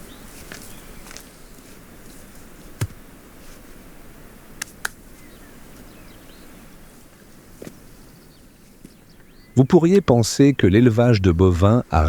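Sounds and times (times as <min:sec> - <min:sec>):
birds chirping: 0:00.0 - 0:01.6, 0:05.0 - 0:12.0.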